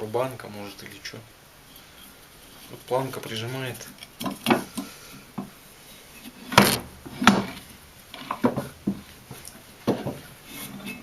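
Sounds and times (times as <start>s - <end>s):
heavy metal parts clunking: 6.2s - 11.0s.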